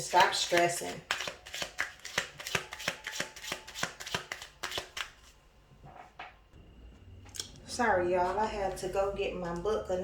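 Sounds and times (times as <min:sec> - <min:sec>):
cards being shuffled: 0:00.1 - 0:05.3.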